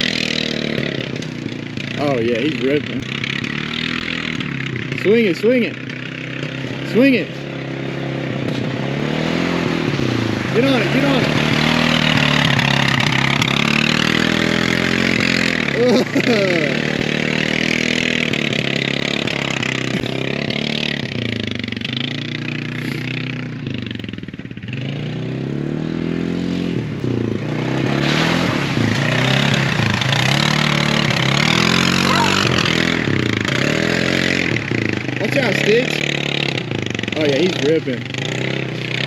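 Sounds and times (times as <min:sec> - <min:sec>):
atv engine revving: 0:00.0 - 0:39.0.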